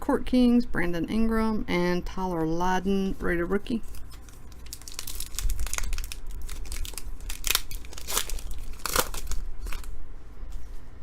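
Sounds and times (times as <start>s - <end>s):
foil wrapper crinkling and tearing: 3.8s - 10.0s.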